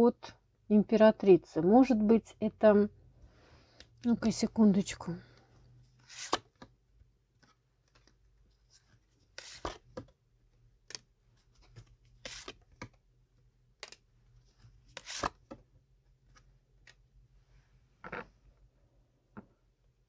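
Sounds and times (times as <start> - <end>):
cards clicking and rustling: 6.0 - 6.7, 8.8 - 10.2, 10.8 - 13.0, 14.9 - 15.6.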